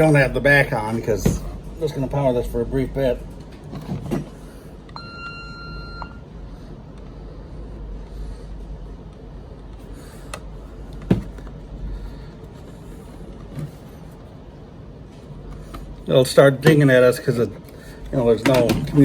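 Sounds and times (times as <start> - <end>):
alarm keypad electronic beep: 5.0 - 6.2.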